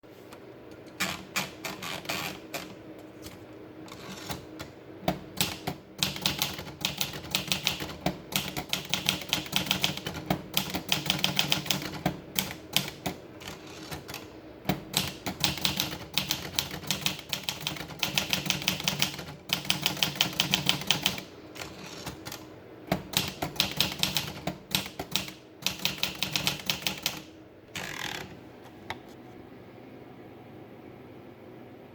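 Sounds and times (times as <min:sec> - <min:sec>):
typewriter keys striking: 0:04.0 - 0:27.3.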